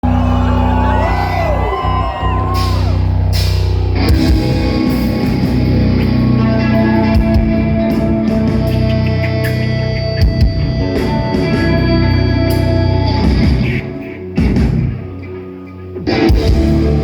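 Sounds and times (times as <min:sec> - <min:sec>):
bending guitar tones: 0:00.0 - 0:17.0
rock band playing: 0:00.1 - 0:17.0.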